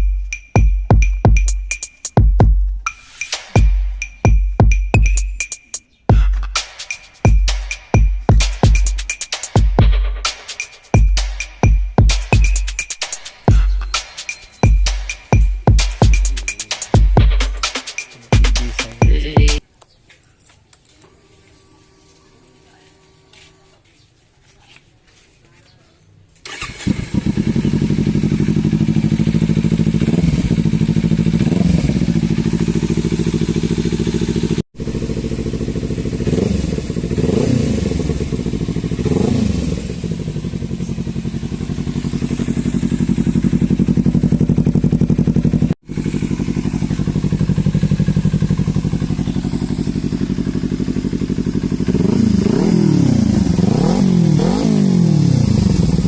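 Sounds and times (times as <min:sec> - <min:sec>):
motorcycle throttle blips: 0:26.4 - 0:56.0
motorcycle engine idling: 0:26.5 - 0:56.0.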